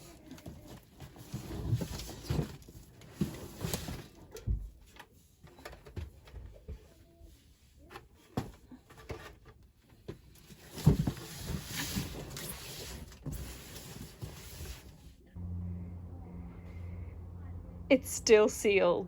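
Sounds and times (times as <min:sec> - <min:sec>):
rustling and scraping of items: 0:00.0 - 0:15.3
low steady hum: 0:15.2 - 0:19.0.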